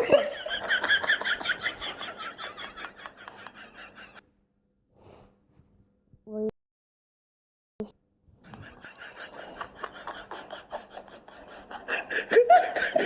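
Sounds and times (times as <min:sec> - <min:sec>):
person laughing: 0:08.6 - 0:13.0.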